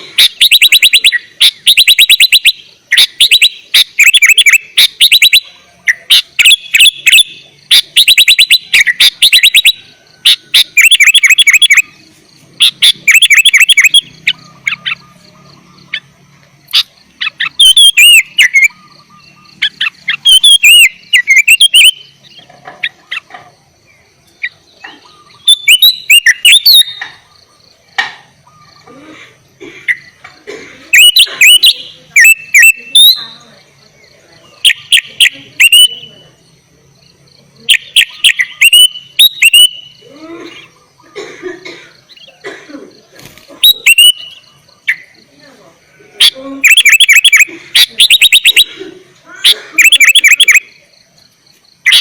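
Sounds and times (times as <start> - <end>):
bird chattering and whistling: 0.0 - 51.0, 51.6 - 52.0.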